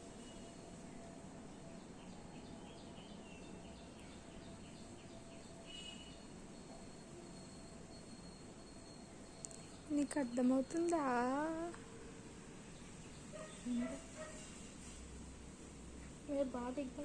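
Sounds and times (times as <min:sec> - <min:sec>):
faint background noise: 0:00.0 - 0:17.0
small bird chirping: 0:01.9 - 0:11.7.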